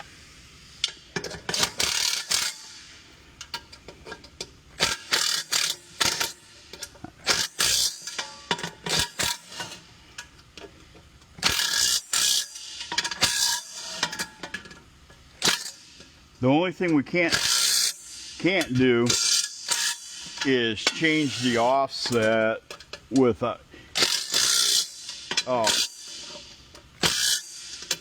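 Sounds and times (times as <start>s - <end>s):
metallic ratcheting: 11.4s - 14.6s, 17.3s - 23.0s, 24.0s - 28.0s.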